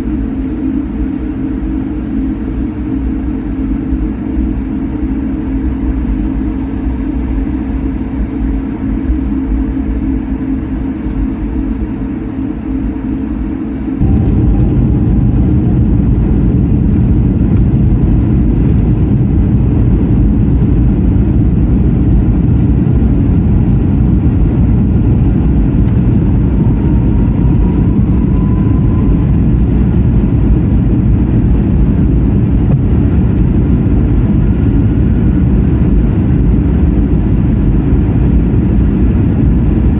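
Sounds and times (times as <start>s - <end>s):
jet engine and airflow rush: 0.0s - 39.9s.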